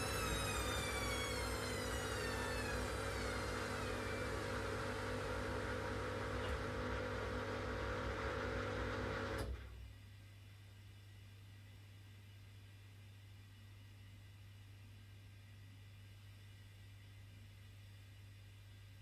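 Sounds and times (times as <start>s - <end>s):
washing machine motor whine: 0.0s - 9.6s.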